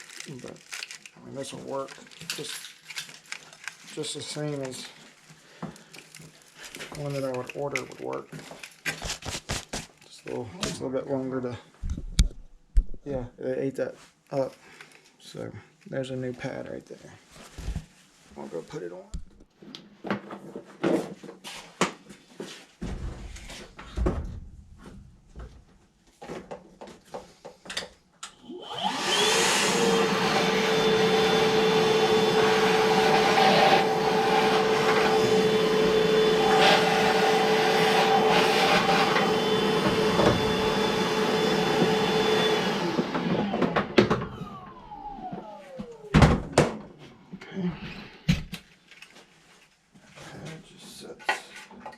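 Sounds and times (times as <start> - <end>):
vacuum cleaner whining: 28.3 - 46.9.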